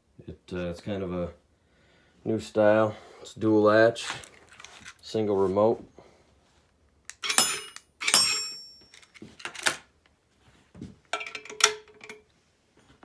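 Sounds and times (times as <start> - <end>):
metal hardware clicking and clanking: 7.1 - 9.8, 11.1 - 12.2.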